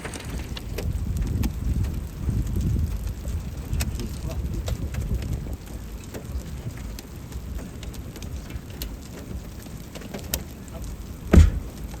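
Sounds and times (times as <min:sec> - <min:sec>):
low road rumble: 0:00.0 - 0:12.0
rain ticking on car: 0:00.0 - 0:12.0
heavy thump: 0:11.3 - 0:12.0.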